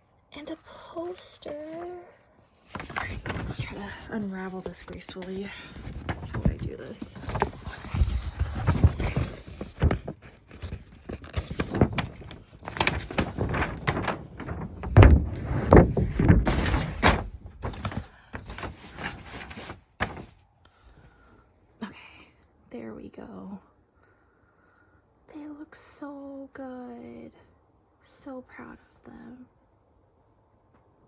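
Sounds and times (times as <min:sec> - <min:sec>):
paper crinkling and rustling: 0:01.0 - 0:02.0, 0:02.6 - 0:20.4
poster knocks and flaps: 0:02.7 - 0:20.3.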